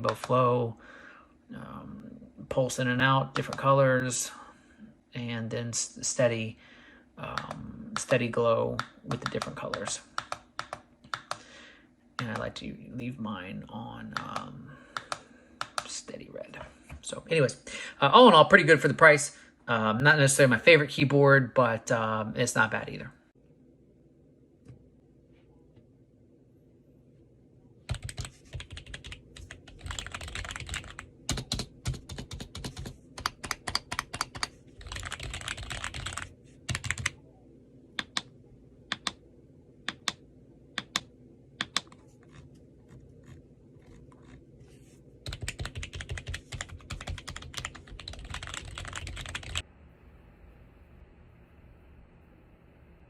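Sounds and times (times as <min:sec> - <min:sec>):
keyboard typing: 0:08.8 - 0:11.4, 0:14.2 - 0:15.9, 0:27.9 - 0:37.2, 0:38.9 - 0:39.2, 0:40.8 - 0:44.4, 0:45.2 - 0:49.6.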